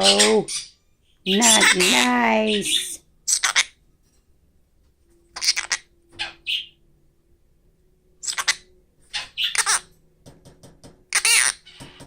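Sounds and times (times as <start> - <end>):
parrot screeching calls: 0.0 - 3.8, 5.4 - 6.8, 8.2 - 9.9, 11.1 - 11.8.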